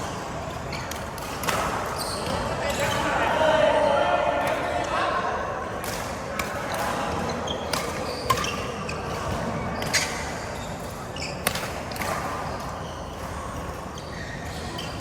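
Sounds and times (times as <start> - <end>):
rackets striking shuttlecock: 0.1 - 3.0, 5.8 - 13.8.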